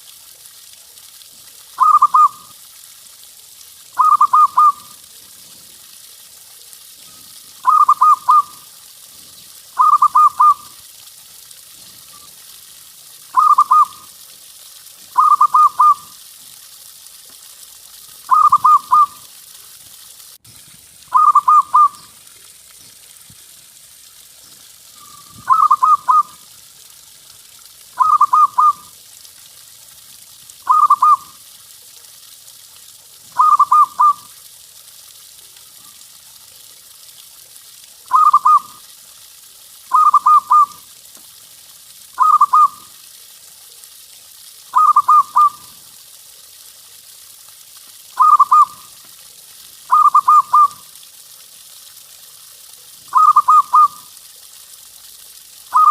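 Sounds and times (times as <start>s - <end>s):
faint steady hiss: 0.0s - 55.9s
dove cooing: 1.8s - 2.4s, 4.0s - 4.9s, 7.6s - 8.5s, 9.8s - 10.7s, 13.3s - 14.0s, 15.2s - 16.1s, 18.3s - 19.2s, 21.1s - 22.0s, 25.0s - 26.4s, 28.0s - 28.8s, 30.7s - 31.2s, 33.4s - 34.2s, 42.2s - 42.8s, 44.8s - 45.6s, 48.2s - 48.8s, 49.9s - 50.8s, 53.1s - 54.0s.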